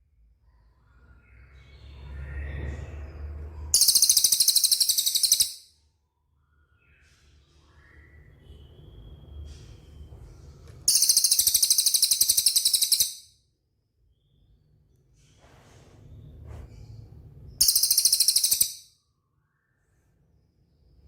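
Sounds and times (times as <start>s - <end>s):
songbird rattling trills: 3.8s - 5.6s, 10.9s - 13.2s, 17.6s - 18.8s.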